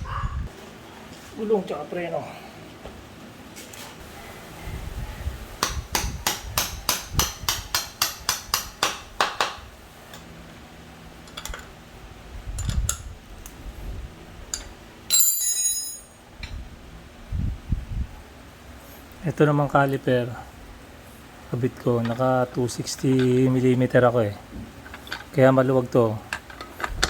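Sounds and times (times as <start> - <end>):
ringing metal clatter: 15.1 - 16.2.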